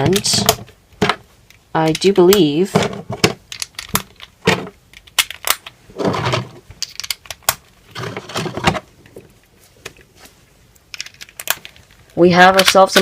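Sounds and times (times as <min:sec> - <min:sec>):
cube layers scraping: 0:03.0 - 0:08.8
plastic puzzle cube clicks: 0:03.5 - 0:05.8, 0:06.8 - 0:07.6.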